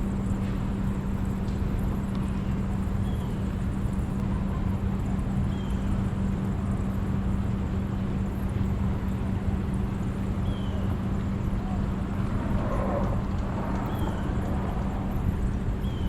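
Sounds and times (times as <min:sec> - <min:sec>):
low motor hum: 0:07.3 - 0:16.0.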